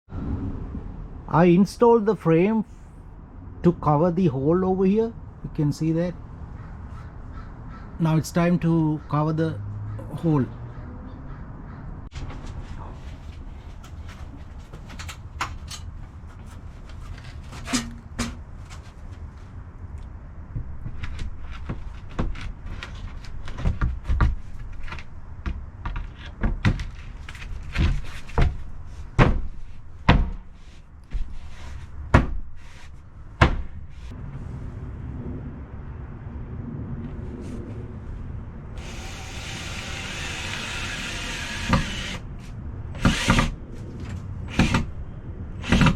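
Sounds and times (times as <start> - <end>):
steady low rumble: 0.1 - 8.0, 33.0 - 45.6
knocks and thuds of window installation: 20.5 - 31.5, 32.1 - 32.5, 33.4 - 34.0, 38.8 - 42.2, 45.7 - 45.9.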